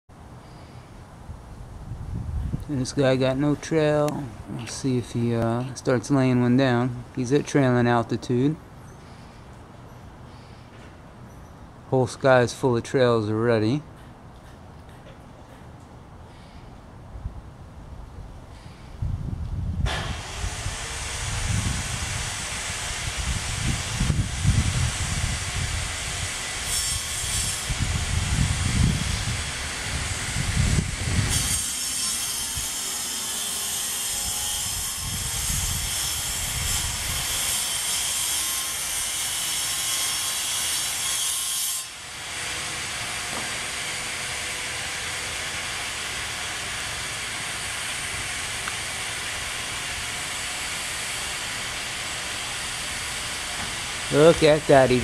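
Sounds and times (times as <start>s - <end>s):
steady rushing hiss: 0.2s - 12.4s, 19.8s - 41.0s, 41.8s - 55.0s.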